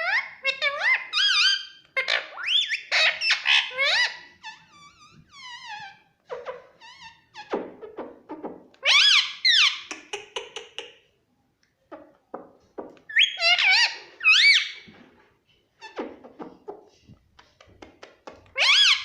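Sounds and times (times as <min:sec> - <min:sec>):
parrot squawking: 0:00.0 - 0:07.6, 0:08.8 - 0:09.9, 0:13.1 - 0:14.9, 0:18.6 - 0:19.0
parrot chattering: 0:13.1 - 0:14.8.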